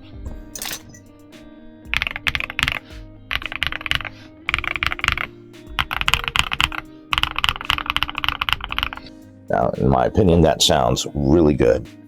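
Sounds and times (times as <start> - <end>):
background music: 0.0 - 12.0
mechanical keyboard typing: 1.9 - 9.1.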